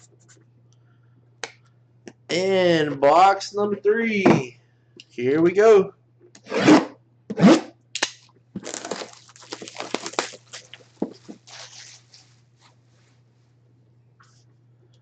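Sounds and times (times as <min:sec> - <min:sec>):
packaging crinkling and tearing: 0:08.0 - 0:12.3.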